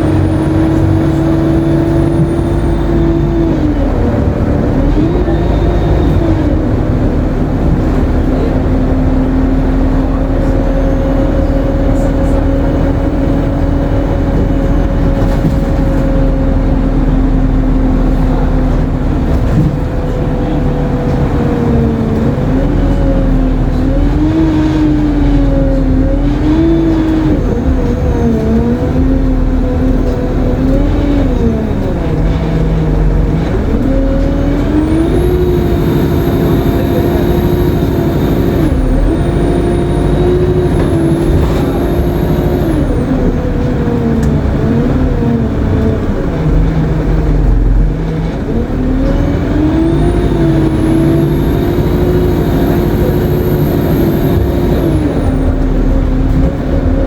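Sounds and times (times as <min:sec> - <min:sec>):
bus engine accelerating: 0:00.0 - 0:57.0
high-pitched turbo whine: 0:34.4 - 0:43.3, 0:49.4 - 0:56.0.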